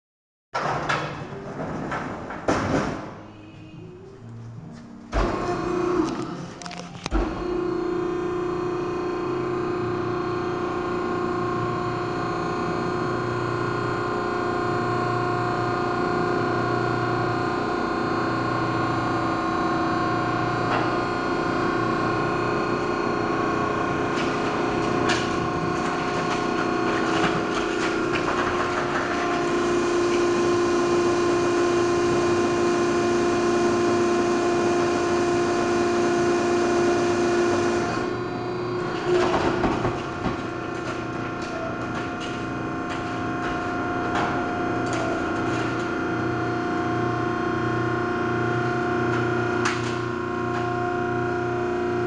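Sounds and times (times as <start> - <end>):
machine clanking: 0.6 - 3.3, 23.2 - 30.8, 37.9 - 46.3
hydraulic pump whine: 1.7 - 52.0.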